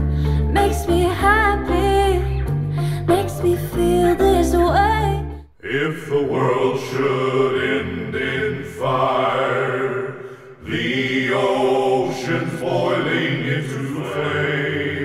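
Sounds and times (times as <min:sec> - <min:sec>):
chant-like layered voices: 0:05.6 - 0:15.0.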